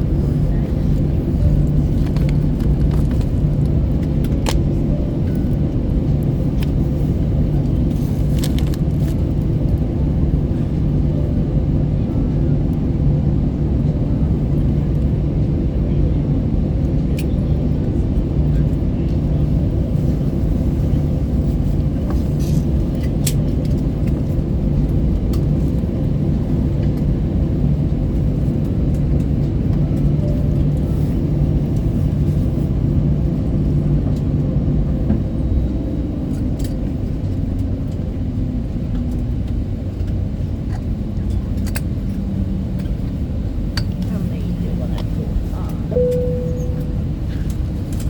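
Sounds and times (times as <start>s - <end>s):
steady hum: 0.0s - 16.6s, 42.7s - 48.0s
aircraft cabin rumble: 0.0s - 48.0s.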